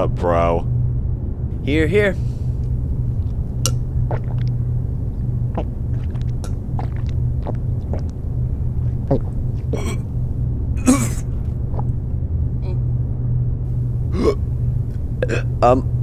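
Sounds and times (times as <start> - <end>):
steady low rumble: 0.0 - 16.0
person gulping from bottle: 4.1 - 4.6, 5.5 - 8.2, 8.8 - 10.0.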